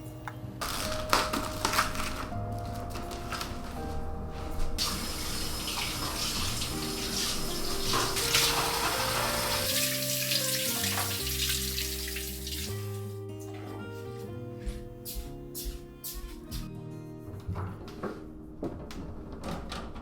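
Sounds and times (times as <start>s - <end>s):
soft background music: 0.0s - 20.0s
water running from tap: 4.7s - 13.1s.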